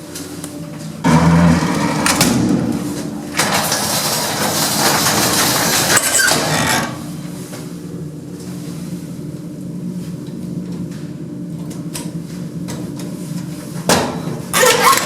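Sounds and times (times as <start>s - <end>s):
steady low hum: 0.0s - 14.6s
metal lift gate sliding and rattling: 1.1s - 7.1s, 14.5s - 15.0s.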